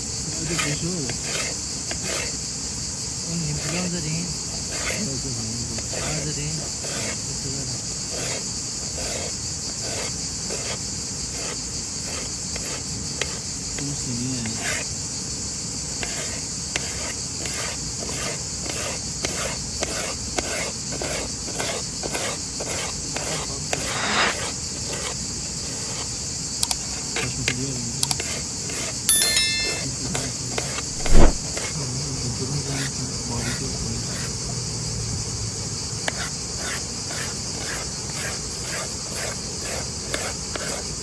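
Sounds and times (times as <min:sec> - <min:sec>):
crickets chirping: 0:00.0 - 0:41.0
light clinks: 0:29.1 - 0:30.4
sharp loud thump: 0:31.0 - 0:31.5.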